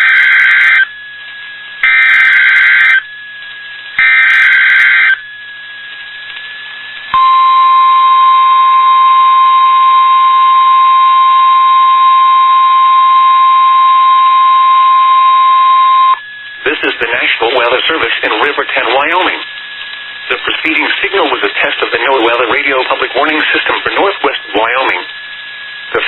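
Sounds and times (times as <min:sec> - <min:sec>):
steady alarm tone: 0:00.0 - 0:01.0, 0:01.8 - 0:03.1, 0:04.0 - 0:05.3, 0:07.2 - 0:16.6
digital data tone bursts: 0:01.8 - 0:03.1, 0:04.0 - 0:05.2.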